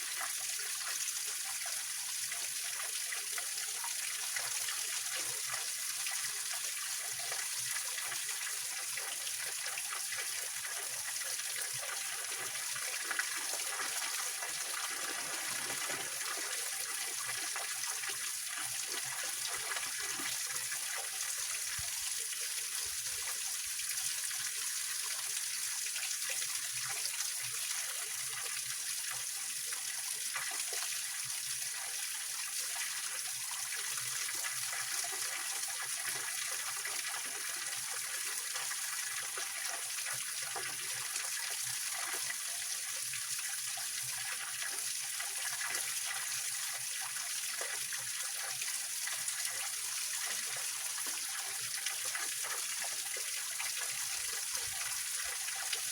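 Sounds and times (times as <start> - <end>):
water splashing over rocks: 13.2 - 17.4.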